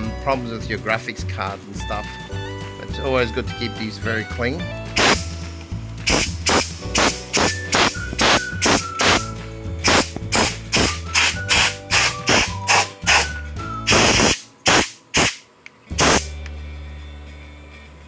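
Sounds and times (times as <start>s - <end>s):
held musical sound: 1.9s - 18.0s
music with beat and bass: 2.3s - 16.6s.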